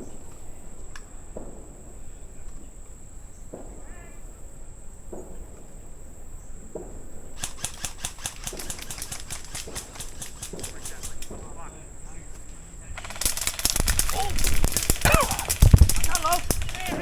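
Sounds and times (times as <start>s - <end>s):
airsoft rifle firing: 7.4s - 11.7s, 13.0s - 17.0s.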